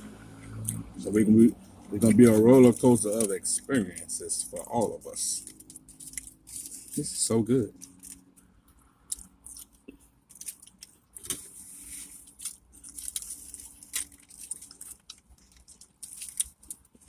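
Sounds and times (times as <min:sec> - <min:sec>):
chewing: 0:00.4 - 0:00.9, 0:07.7 - 0:11.4, 0:12.3 - 0:17.0
food packaging crackling: 0:01.9 - 0:17.0.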